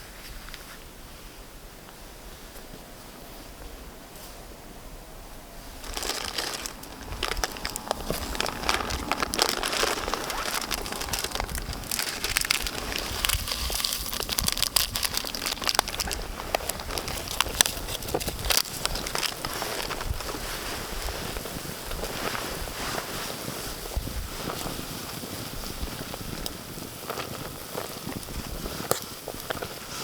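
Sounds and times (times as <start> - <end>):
plastic packaging crinkling: 5.8 - 21.2.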